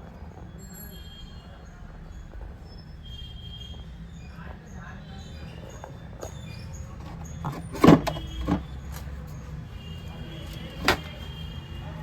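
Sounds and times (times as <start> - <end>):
sharp knocks and clatters: 6.2 - 9.2, 10.5 - 11.3.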